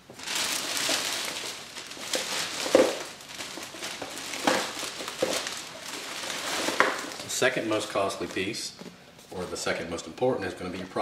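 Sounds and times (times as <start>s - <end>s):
packaging rustling and crinkling: 0.0s - 8.6s.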